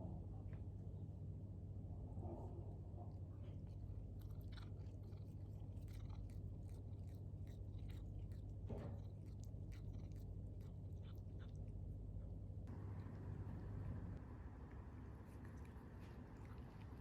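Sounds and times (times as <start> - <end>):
steady low hum: 1.4 - 17.0
cat crunching food: 3.7 - 17.0.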